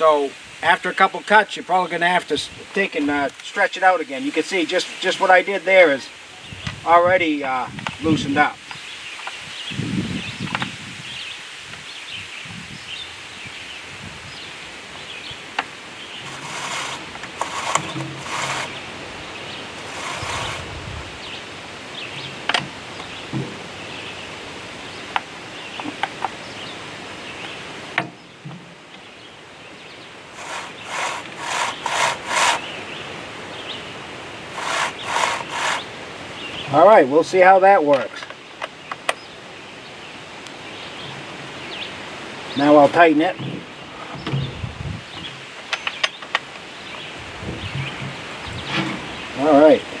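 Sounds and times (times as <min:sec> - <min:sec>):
chain rasping over bar: 0:16.2 - 0:20.8, 0:30.4 - 0:32.8, 0:34.5 - 0:35.9.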